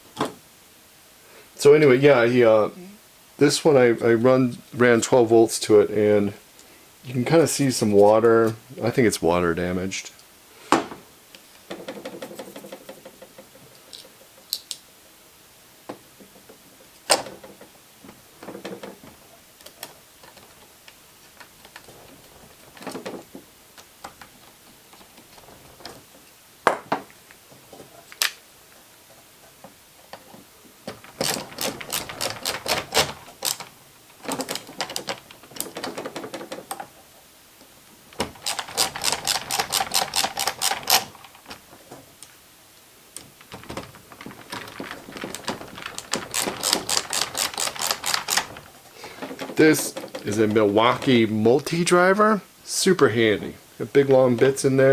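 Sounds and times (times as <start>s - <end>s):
small plastic parts clicking: 11.7s - 14.8s, 30.8s - 36.9s, 38.1s - 42.3s, 43.2s - 51.2s
ratcheting screwdriver clicking: 31.2s - 33.7s, 38.2s - 41.3s, 46.0s - 48.5s.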